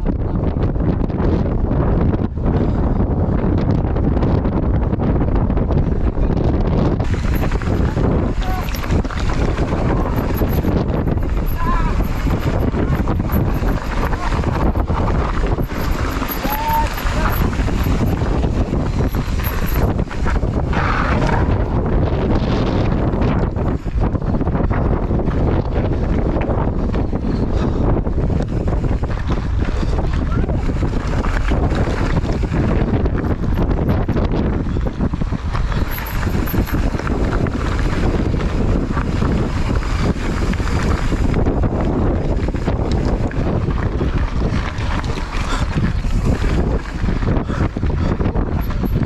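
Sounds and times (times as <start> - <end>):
wind buffeting microphone: 0.0 - 49.0.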